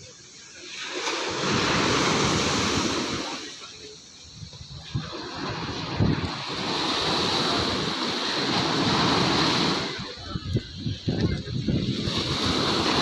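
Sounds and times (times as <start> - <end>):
surf hissing on beach: 0.0 - 13.0
wind buffeting microphone: 4.3 - 13.0.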